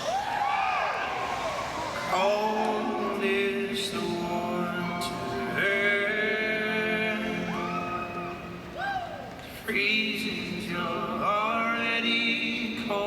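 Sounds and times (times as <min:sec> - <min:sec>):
voices singing in harmony: 0:02.0 - 0:08.6.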